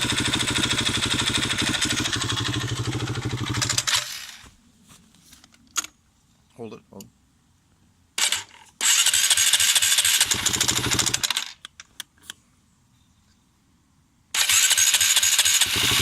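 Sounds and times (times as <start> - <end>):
motorcycle engine starting and running: 0.0 - 4.3, 8.2 - 11.5, 14.4 - 16.0.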